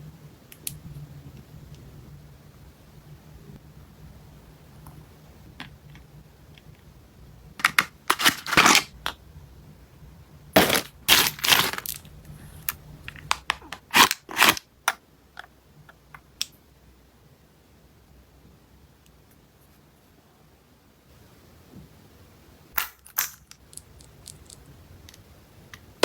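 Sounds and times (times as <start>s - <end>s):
packaging crinkling: 7.6s - 9.0s, 10.6s - 12.0s, 13.2s - 14.6s.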